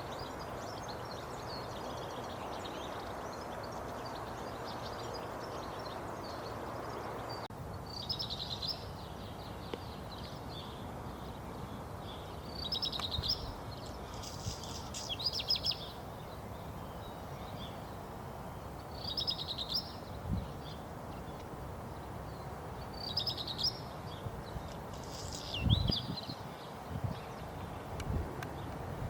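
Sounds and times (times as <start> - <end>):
bird singing rattling trill: 12.2 - 18.0, 18.9 - 20.8.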